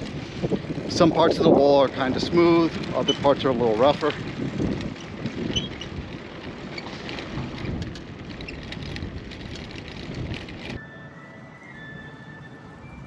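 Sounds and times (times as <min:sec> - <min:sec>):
wind buffeting microphone: 0:00.0 - 0:10.8
bicycle rattling over paving: 0:00.0 - 0:13.0
faint steady high tones: 0:10.8 - 0:13.0.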